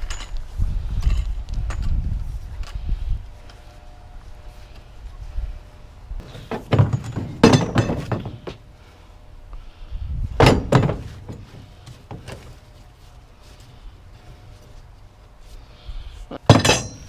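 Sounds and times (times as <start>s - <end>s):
junk thudding and knocking: 6.2s - 8.7s, 10.3s - 12.5s, 16.4s - 17.0s.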